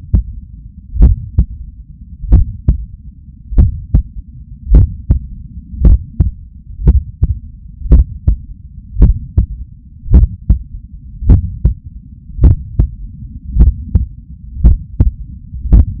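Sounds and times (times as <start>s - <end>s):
heartbeat through stethoscope: 0.0s - 0.4s, 1.0s - 1.6s, 2.3s - 2.9s, 3.6s - 8.4s, 9.0s - 11.8s, 12.4s - 13.0s, 13.6s - 16.0s
low rumble: 0.0s - 16.0s.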